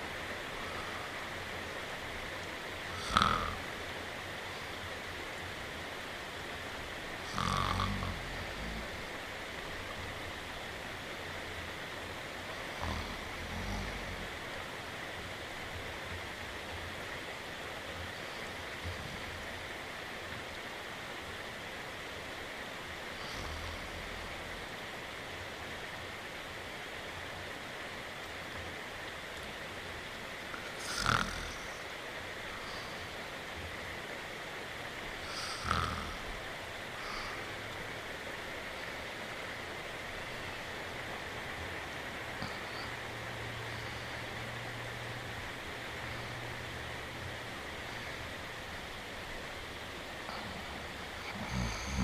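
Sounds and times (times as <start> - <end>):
rain hiss: 0.0 - 52.0
person snoring: 2.9 - 3.6, 7.2 - 9.1, 12.6 - 14.3, 23.2 - 24.4, 30.6 - 31.8, 35.2 - 36.2, 37.0 - 37.5, 50.3 - 52.0.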